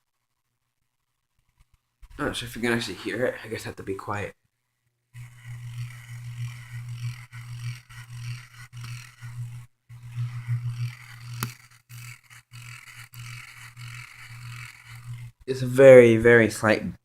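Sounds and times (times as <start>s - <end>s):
scratching fan bearing: 5.2s - 16.0s.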